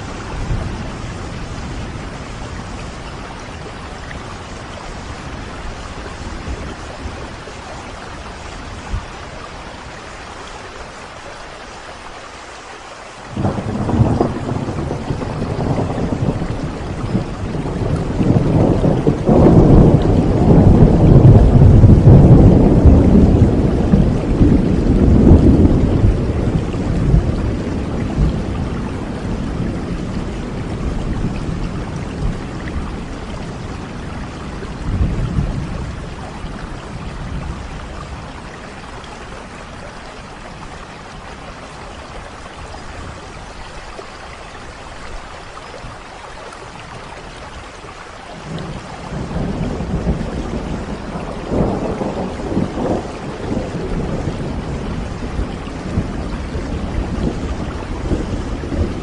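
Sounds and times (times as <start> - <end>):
heavy rain: 0.0 - 59.0
rolling thunder: 13.3 - 41.4, 48.4 - 59.0.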